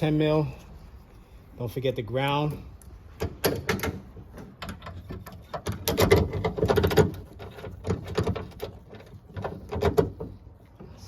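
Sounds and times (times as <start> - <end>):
hand tools clicking and rattling: 3.2 - 10.3.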